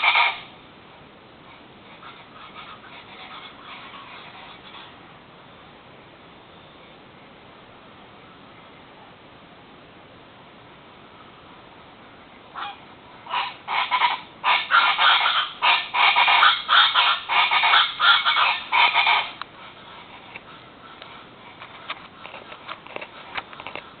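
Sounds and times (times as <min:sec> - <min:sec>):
birds squawking harsh calls: 0:00.0 - 0:00.5, 0:01.9 - 0:05.0, 0:12.5 - 0:24.0.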